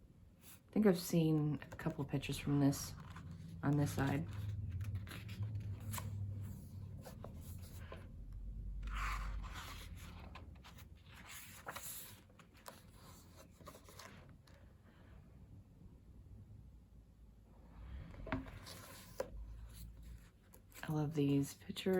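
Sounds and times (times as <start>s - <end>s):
book pages turning: 1.5s - 14.7s, 18.1s - 21.5s.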